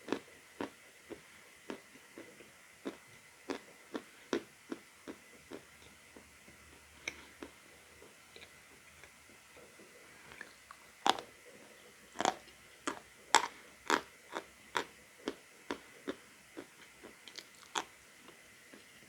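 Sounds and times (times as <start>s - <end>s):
person chewing crunchy chalk: 10.3s - 11.3s, 12.1s - 18.4s.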